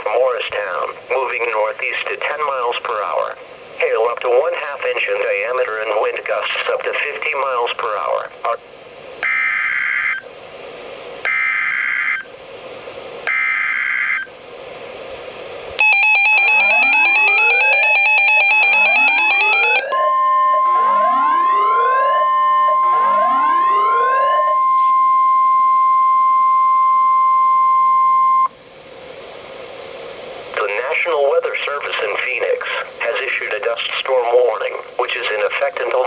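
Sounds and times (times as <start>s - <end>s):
steady warning alarm tone: 9.2s - 10.3s, 11.3s - 12.3s, 13.3s - 14.3s, 15.8s - 28.6s
electronic alarm with rising whoops: 11.3s - 12.3s, 15.8s - 28.5s
screeching digital data bursts: 15.8s - 19.8s.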